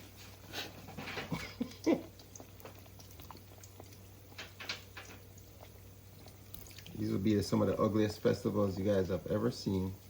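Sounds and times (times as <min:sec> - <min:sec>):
dough frying in hot oil: 0:00.0 - 0:10.0.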